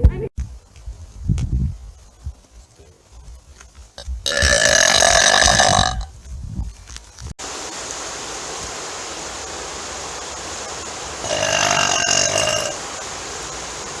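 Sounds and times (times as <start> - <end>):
steady rushing noise: 0.4 - 14.0
person burping: 4.3 - 6.1, 11.2 - 12.8.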